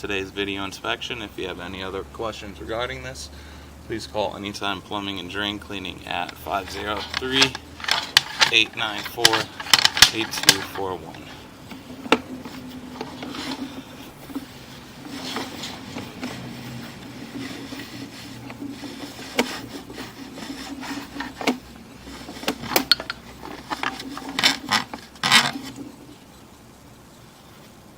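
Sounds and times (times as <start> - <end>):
steady low hum: 0.0 - 27.9
cable rubbing and scraping: 6.0 - 26.2
sharp clicks and knocks: 6.2 - 26.2.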